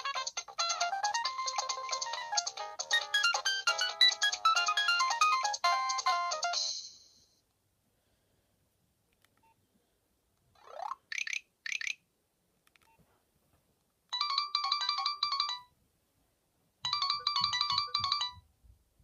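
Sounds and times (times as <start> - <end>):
polyphonic ringtone melody: 0.0 - 6.8, 14.2 - 15.7, 16.9 - 18.4.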